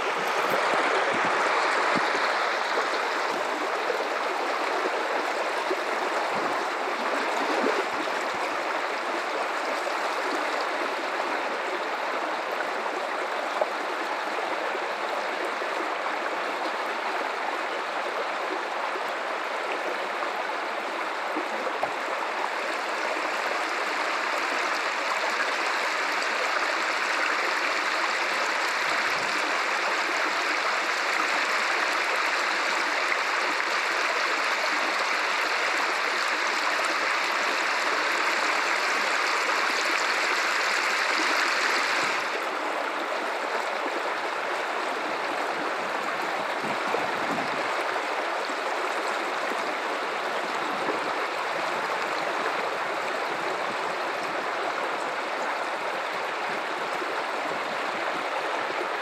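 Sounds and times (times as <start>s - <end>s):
river water running: 0.0s - 59.0s.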